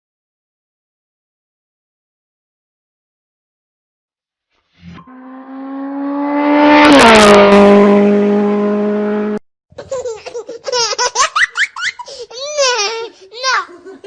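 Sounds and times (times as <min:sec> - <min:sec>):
vehicle engine passing by: 0:04.7 - 0:09.4
baby laughing: 0:09.7 - 0:14.0.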